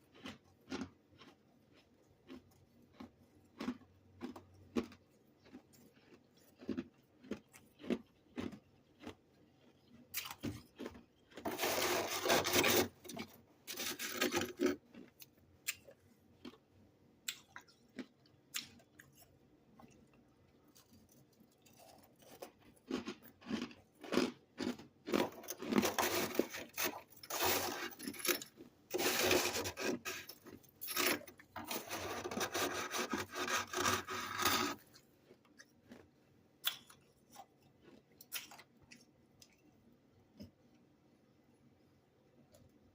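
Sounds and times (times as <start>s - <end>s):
frost scraping: 11.4s - 12.9s, 25.6s - 34.8s.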